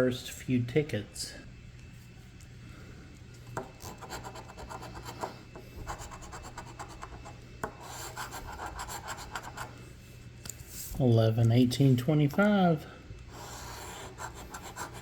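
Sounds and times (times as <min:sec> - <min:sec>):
scratching lottery ticket: 0:03.8 - 0:09.7, 0:13.3 - 0:15.0.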